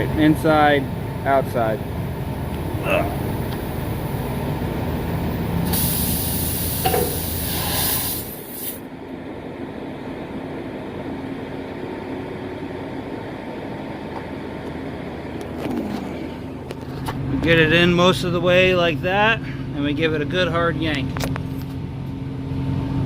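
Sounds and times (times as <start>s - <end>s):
low engine rumble: 0.0s - 7.6s, 8.2s - 23.0s
air hissing from tire: 5.6s - 8.9s.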